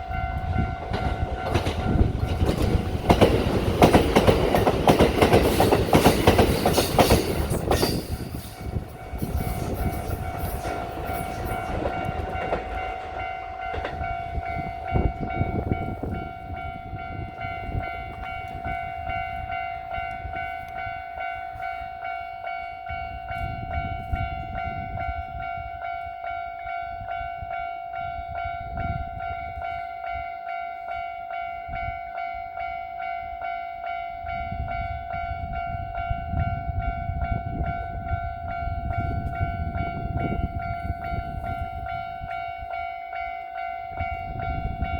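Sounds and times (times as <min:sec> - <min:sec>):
train wheels clacking on rails: 0:00.0 - 0:21.4
level-crossing bell ringing: 0:03.8 - 0:44.9.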